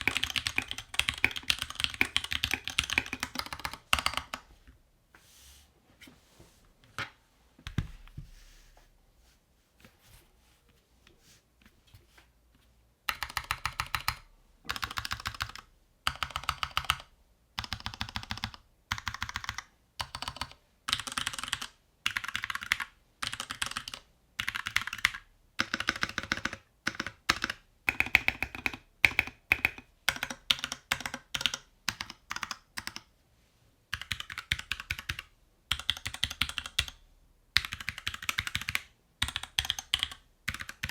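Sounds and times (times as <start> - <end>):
mechanical keyboard typing: 0.0 - 4.5, 13.1 - 33.1, 33.9 - 37.0, 37.6 - 40.9.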